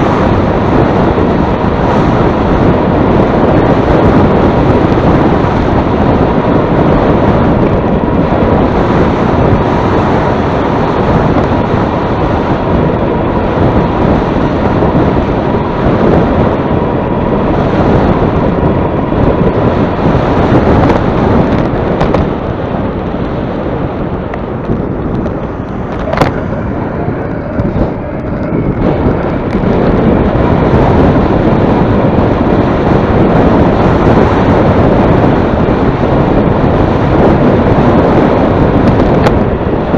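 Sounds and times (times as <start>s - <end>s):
wind buffeting microphone: 0.0s - 39.9s
faint steady whine: 8.5s - 34.4s.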